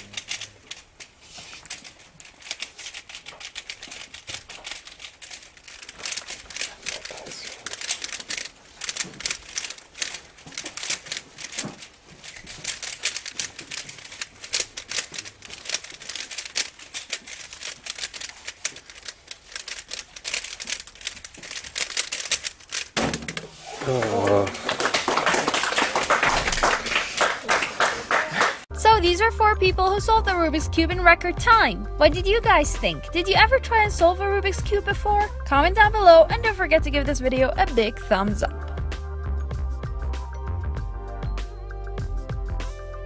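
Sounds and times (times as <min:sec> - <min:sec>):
puzzle cube plastic clicks: 0:00.0 - 0:23.5.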